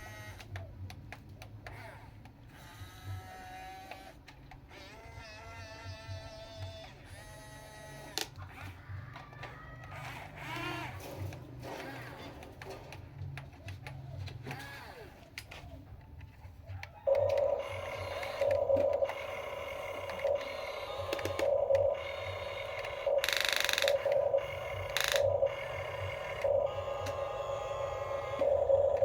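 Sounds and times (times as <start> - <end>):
toy vehicle electric motors whining: 0.0 - 0.7, 1.6 - 12.8, 13.6 - 15.9, 16.7 - 29.0.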